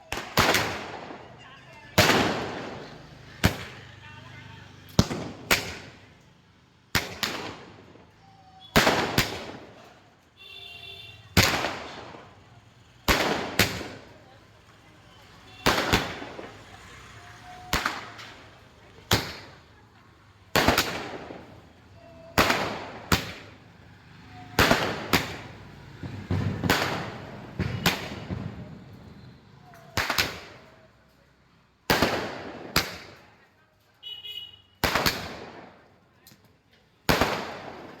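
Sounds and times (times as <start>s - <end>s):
firework bangs: 0.0s - 3.8s, 4.9s - 6.1s, 6.9s - 8.1s, 8.7s - 14.3s, 15.1s - 19.8s, 20.5s - 23.6s, 24.3s - 30.7s, 31.8s - 33.4s, 34.0s - 35.9s, 37.0s - 38.0s.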